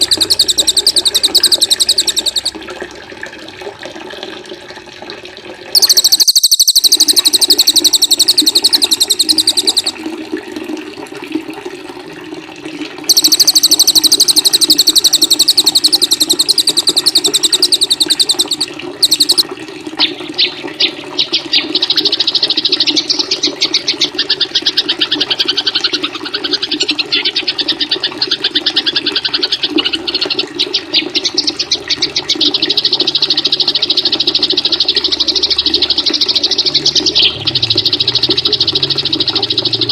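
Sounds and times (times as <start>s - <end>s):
bird chattering trill: 0.0s - 2.6s, 5.8s - 10.0s, 13.1s - 19.4s, 21.2s - 39.9s
songbird high-pitched trills: 0.0s - 2.6s, 5.8s - 10.0s, 13.1s - 19.4s, 20.0s - 25.8s, 29.1s - 39.9s
water sound: 0.0s - 12.1s, 12.7s - 39.9s.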